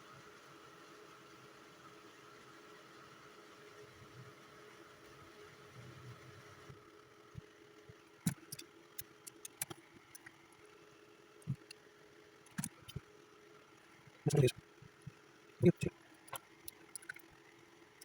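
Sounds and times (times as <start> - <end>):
faint steady hum: 0.0 - 18.0
small tools and wire clicking: 8.3 - 10.4, 12.4 - 13.0, 16.2 - 17.3.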